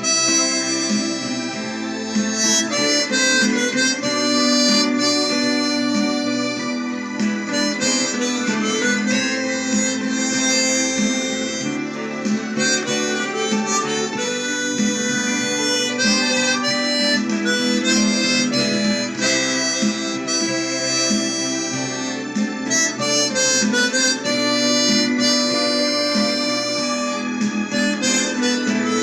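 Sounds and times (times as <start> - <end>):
harmonica melody: 0.0 - 29.0
low backing accompaniment: 0.0 - 29.0.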